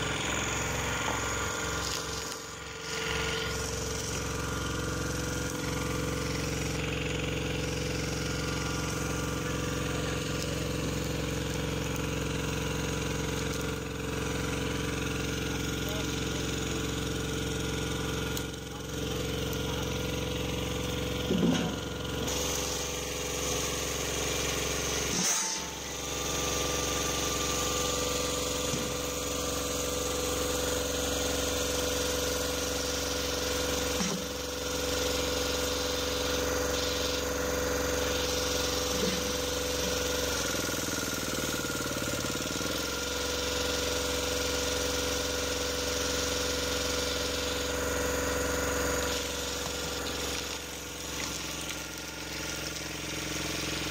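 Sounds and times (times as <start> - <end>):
heavy machinery engine droning: 0.0 - 29.7.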